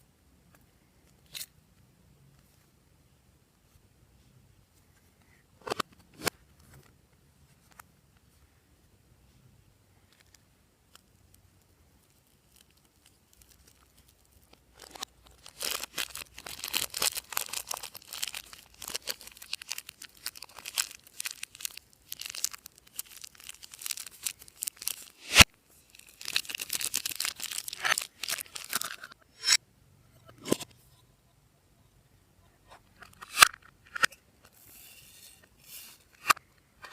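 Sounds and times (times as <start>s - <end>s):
slime squishing and crackling: 12.0s - 29.0s.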